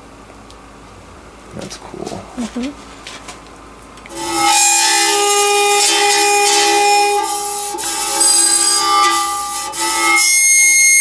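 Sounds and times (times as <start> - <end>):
gritty rasping buzz: 4.1 - 11.0.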